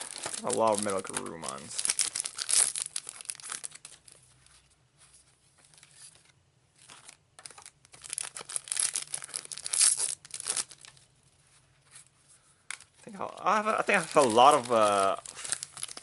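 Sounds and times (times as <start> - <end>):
foil packs tearing and crinkling: 0.0 - 4.0, 7.4 - 10.9, 13.5 - 16.0.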